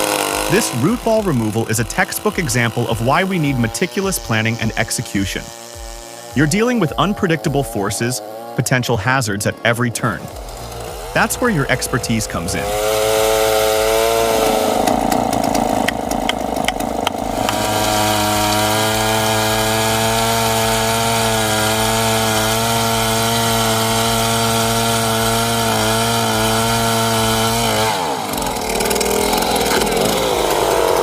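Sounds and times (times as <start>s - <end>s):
chainsaw engine at high revs: 0.0s - 31.0s
sharp ticks: 10.2s - 31.0s.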